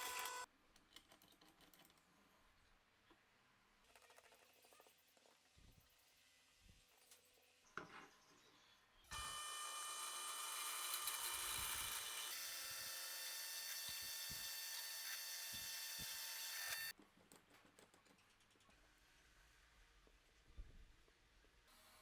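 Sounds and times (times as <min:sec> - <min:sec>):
electric drill whining: 0:00.0 - 0:00.5, 0:09.1 - 0:16.9.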